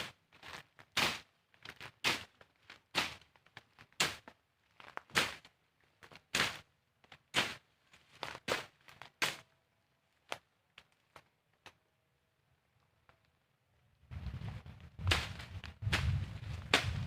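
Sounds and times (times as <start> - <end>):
footsteps crunching on dry ground: 14.1 - 17.0.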